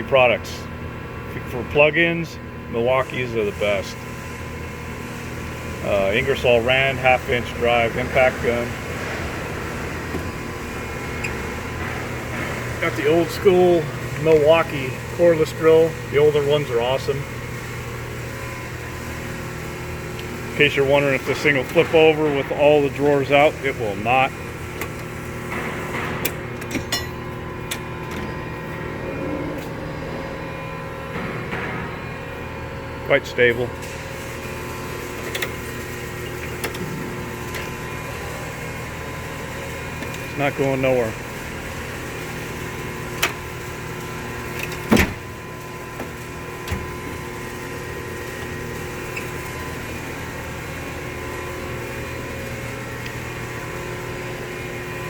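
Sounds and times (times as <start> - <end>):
workplace machinery hum: 0.0 - 55.0.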